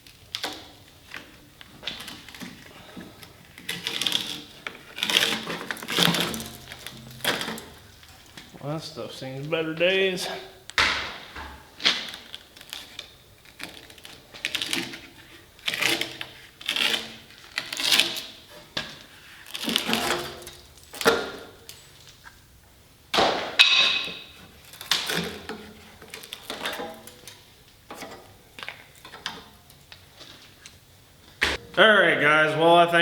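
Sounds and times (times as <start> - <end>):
metal parts and tools clanking: 2.0 - 8.5, 23.6 - 29.5.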